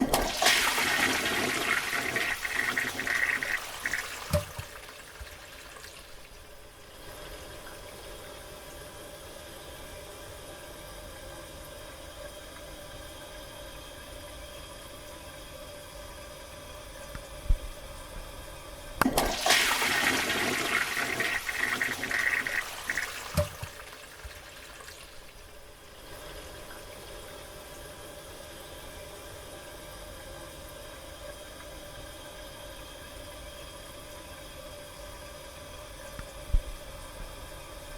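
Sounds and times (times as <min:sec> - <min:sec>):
toilet flushing: 0:00.0 - 0:37.9
cistern refilling hiss: 0:17.5 - 0:28.5.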